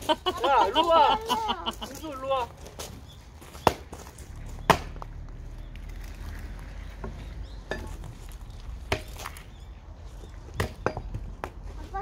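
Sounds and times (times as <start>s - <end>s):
axe striking a log: 3.6s - 4.0s, 4.6s - 5.1s, 8.8s - 9.4s, 10.6s - 11.6s.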